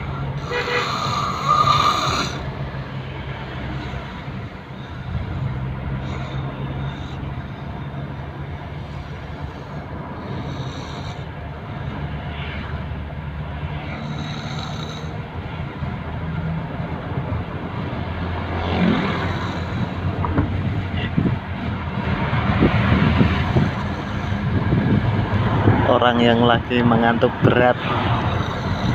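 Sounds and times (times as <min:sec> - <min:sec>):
person snoring heavily: 0:00.0 - 0:02.5, 0:09.0 - 0:11.4, 0:13.8 - 0:15.2, 0:18.7 - 0:20.1, 0:23.2 - 0:24.6, 0:27.8 - 0:28.9.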